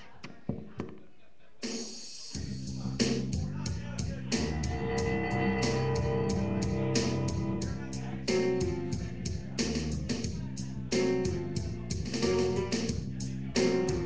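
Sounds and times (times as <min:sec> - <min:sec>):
steady drum beat: 0:01.6 - 0:14.0
sustained guitar notes: 0:04.3 - 0:09.2.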